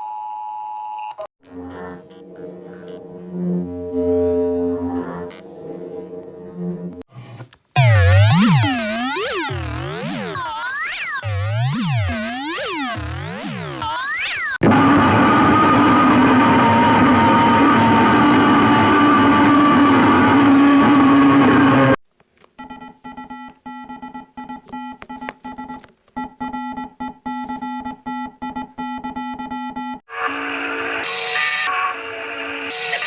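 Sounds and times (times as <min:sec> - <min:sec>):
stuttering pitched tone: 0:07.8 - 0:14.6
harsh noisy alarm tone: 0:07.8 - 0:22.0.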